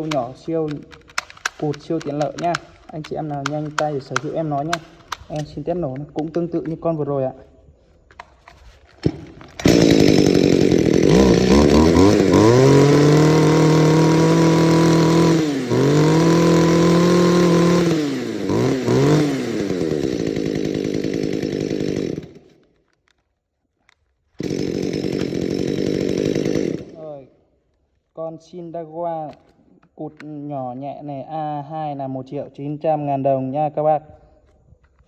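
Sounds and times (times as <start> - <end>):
chainsaw engine revving and idling: 0.0 - 6.8, 8.2 - 22.5, 24.4 - 27.2.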